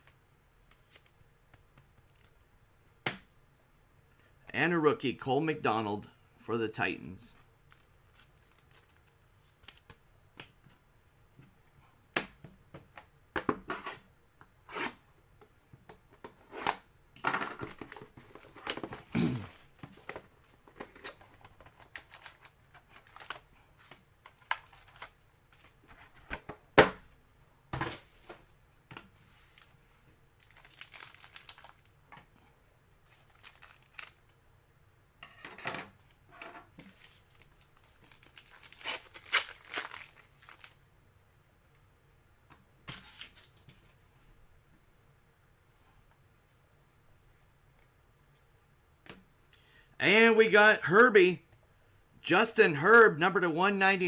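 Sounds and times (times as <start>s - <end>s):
card pack wrappers tearing: 21.8s - 23.5s, 24.4s - 25.2s, 30.4s - 31.9s, 33.1s - 34.4s, 37.0s - 40.8s.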